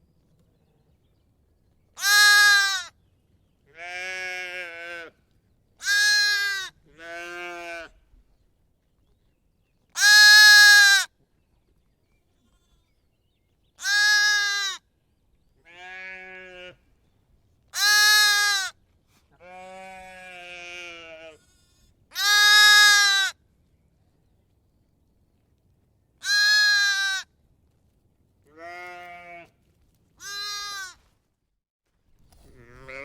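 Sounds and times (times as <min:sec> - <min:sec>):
sheep bleating: 0:02.0 - 0:02.9, 0:03.8 - 0:05.1, 0:05.8 - 0:08.0, 0:15.7 - 0:16.8, 0:19.4 - 0:23.4, 0:28.5 - 0:29.5, 0:30.2 - 0:31.0, 0:32.5 - 0:33.0.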